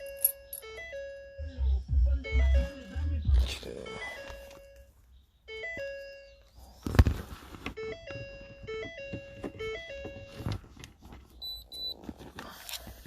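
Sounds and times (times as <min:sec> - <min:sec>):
electronic beeping jingle: 0:00.0 - 0:04.9.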